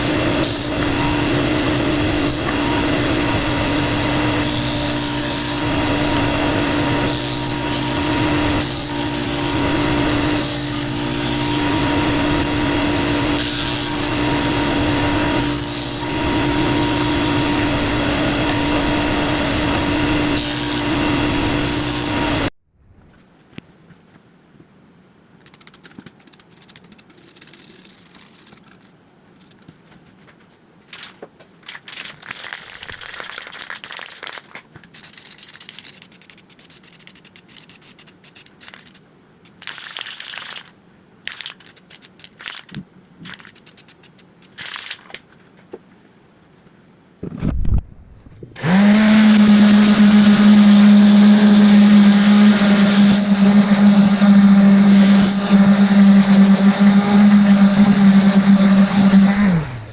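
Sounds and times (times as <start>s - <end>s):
high-pitched motor running: 0.0s - 22.5s, 48.6s - 59.9s.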